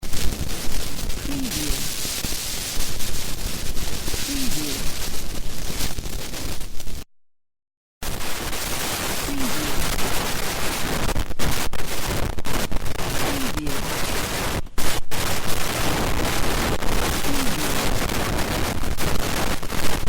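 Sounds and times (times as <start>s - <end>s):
loud electronic static: 1.0s - 2.1s, 4.2s - 5.0s, 8.0s - 20.0s.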